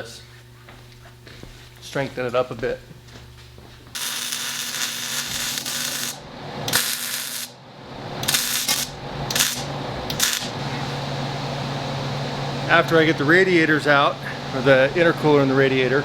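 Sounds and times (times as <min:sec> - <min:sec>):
arc welding crackling sizzle: 0:03.9 - 0:07.6, 0:08.2 - 0:10.9.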